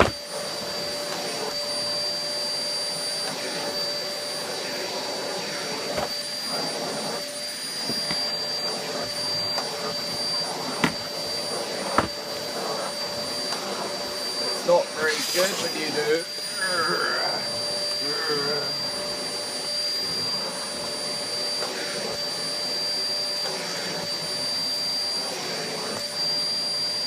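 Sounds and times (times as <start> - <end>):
sharp knocks on floor: 0.0 - 0.2, 12.0 - 12.2
vacuum cleaner running: 0.0 - 27.0.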